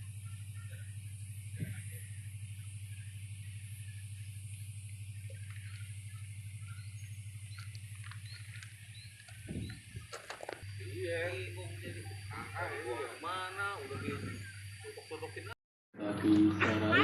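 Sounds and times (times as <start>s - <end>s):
train carriage hum pulsing: 0.0s - 17.0s
faint high chirps and clicks: 4.2s - 10.7s.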